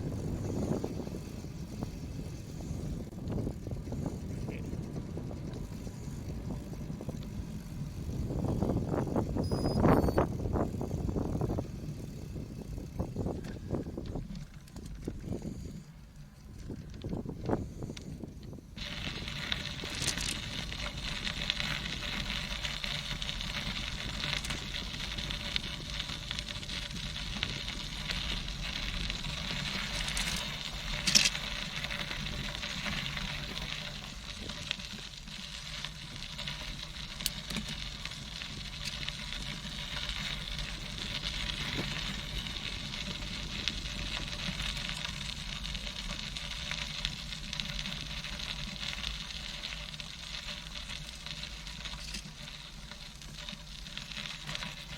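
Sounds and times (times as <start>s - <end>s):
bicycle tyres hissing on trail: 0.0s - 54.9s
small clicks: 19.8s - 20.4s, 27.2s - 31.4s, 49.7s - 52.6s.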